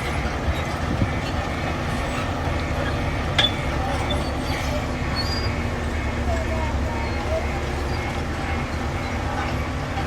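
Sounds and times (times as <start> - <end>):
short squeaks: 0.0 - 5.6
diesel engine rumbling: 0.0 - 10.0.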